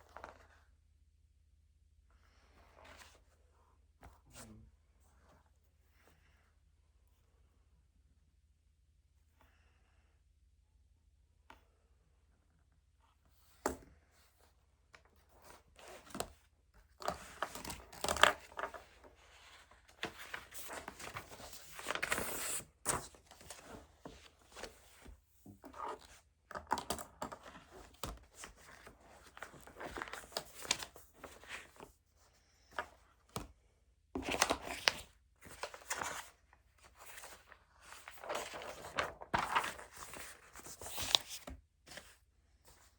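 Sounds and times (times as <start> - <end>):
paper rustling and tearing: 37.0 - 41.5.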